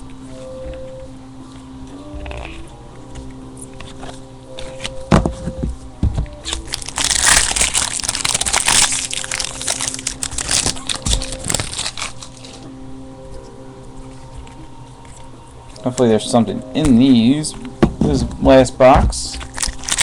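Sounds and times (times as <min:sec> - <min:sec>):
packaging crinkling and tearing: 0:06.3 - 0:12.7, 0:19.3 - 0:20.0.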